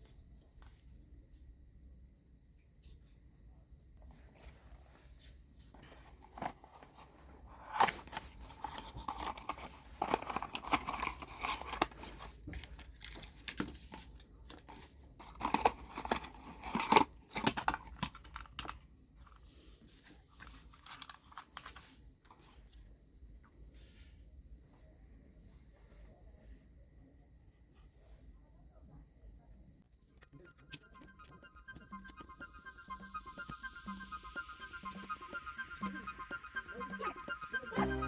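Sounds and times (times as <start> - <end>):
crinkling and tearing: 5.8 - 18.7.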